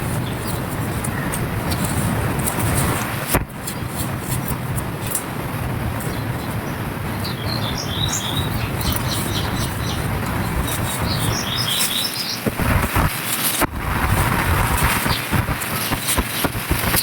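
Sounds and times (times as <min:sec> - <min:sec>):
birds chirping: 0:06.0 - 0:17.0.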